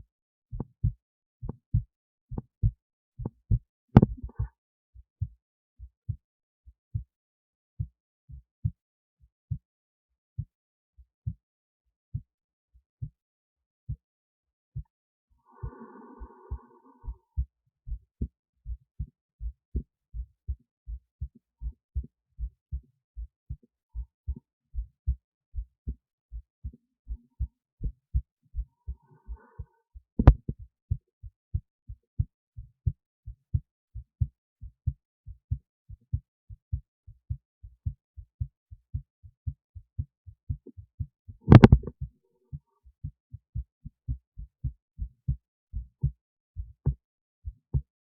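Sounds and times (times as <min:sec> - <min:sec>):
heartbeat thudding: 0:00.5 - 0:04.5, 0:30.2 - 0:31.6, 0:36.1 - 0:42.1
sharp click: 0:41.5 - 0:41.9.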